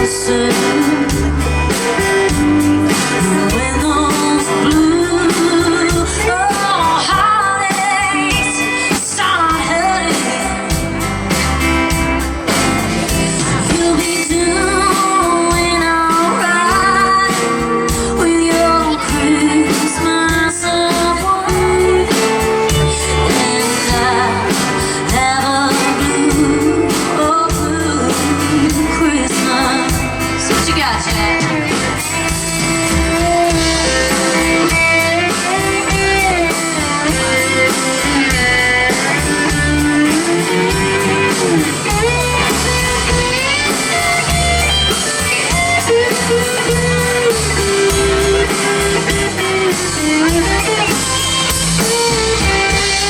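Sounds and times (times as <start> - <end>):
person singing: 0.0 - 2.3, 2.9 - 11.0, 13.3 - 31.9
country band music: 0.0 - 53.0
guitar: 0.0 - 53.0.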